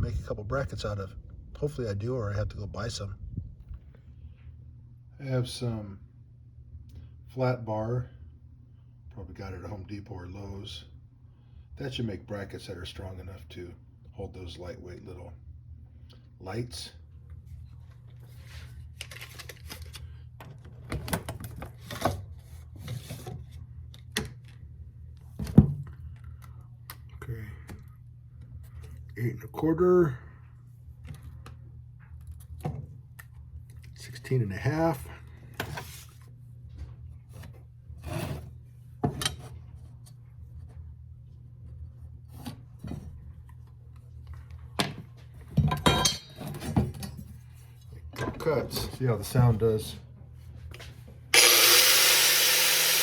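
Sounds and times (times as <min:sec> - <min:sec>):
steady low hum: 0:00.0 - 0:53.0
metal bar knocks and clinks: 0:45.7 - 0:46.5.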